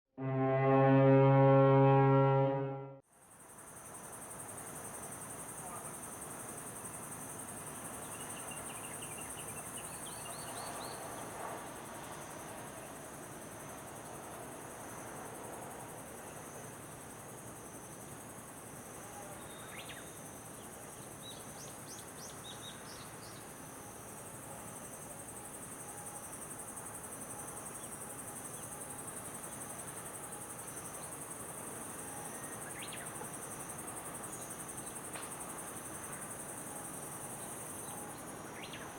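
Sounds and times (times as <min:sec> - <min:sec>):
insects chirping: 0:03.1 - 0:38.9.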